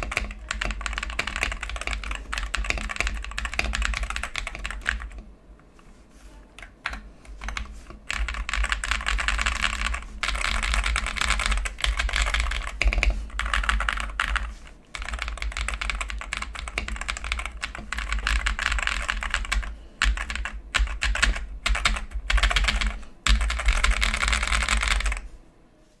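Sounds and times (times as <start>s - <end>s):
fast typing on mechanical keyboard: 0.0s - 5.3s, 6.6s - 25.3s.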